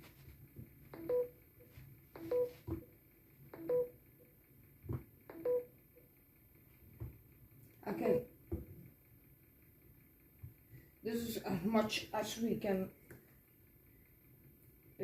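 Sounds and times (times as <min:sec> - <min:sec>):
short beeping tones with clicks: 0:01.0 - 0:01.4, 0:02.2 - 0:02.7, 0:03.6 - 0:04.0, 0:05.3 - 0:05.7.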